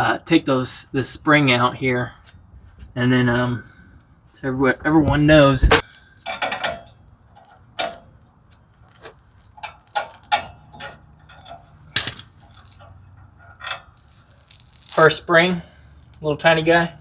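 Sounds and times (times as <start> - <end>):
metallic clicking and scraping: 5.0 - 15.2.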